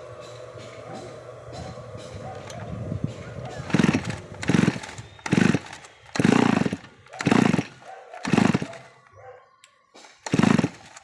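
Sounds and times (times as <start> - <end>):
brush cutter engine bursts: 3.2 - 9.2, 10.0 - 11.0.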